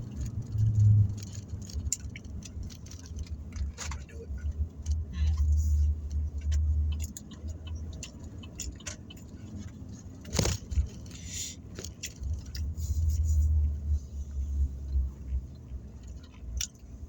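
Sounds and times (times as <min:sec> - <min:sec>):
food crinkling while eaten: 0:00.0 - 0:05.4, 0:06.1 - 0:13.6
car engine and road rumble: 0:00.0 - 0:17.0.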